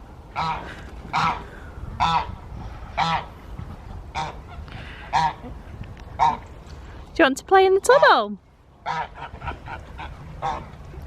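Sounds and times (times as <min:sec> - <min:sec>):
geese honking: 0:00.4 - 0:01.4, 0:03.0 - 0:03.3, 0:04.1 - 0:05.4, 0:08.8 - 0:10.7.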